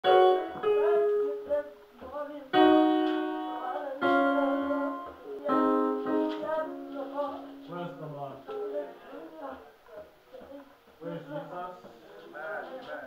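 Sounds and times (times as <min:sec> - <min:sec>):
wavering keyboard notes: 0:00.0 - 0:01.6, 0:02.5 - 0:08.8
keyboard chords: 0:00.0 - 0:01.8, 0:02.4 - 0:08.9.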